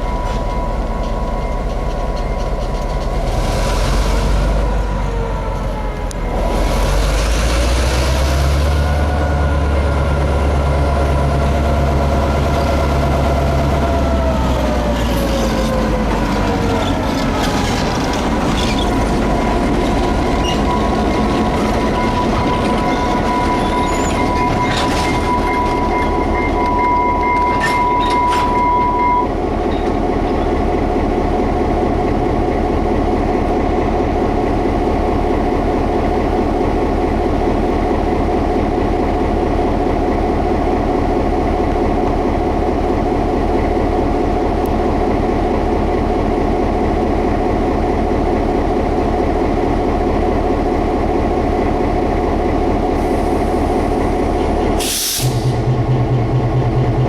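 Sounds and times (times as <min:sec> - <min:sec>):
diesel locomotive running: 0:00.0 - 0:57.0
high steady squeal: 0:18.5 - 0:29.8.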